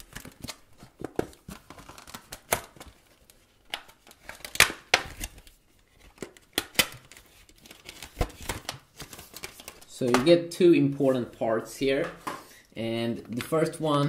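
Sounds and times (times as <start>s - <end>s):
cardboard and plastic packaging handled: 0.0s - 10.3s.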